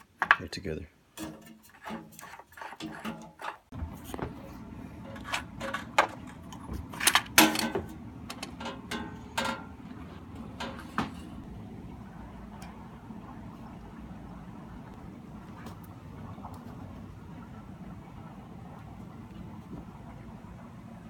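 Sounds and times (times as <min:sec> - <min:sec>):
hand tools clanking on metal: 0:01.2 - 0:04.1, 0:05.0 - 0:09.8, 0:10.4 - 0:11.4.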